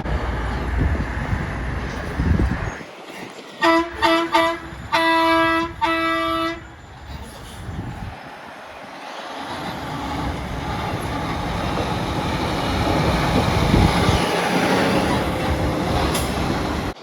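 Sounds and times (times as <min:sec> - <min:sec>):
heavy truck engine and tyres: 0:00.0 - 0:17.0
train horn blasts: 0:03.6 - 0:06.7.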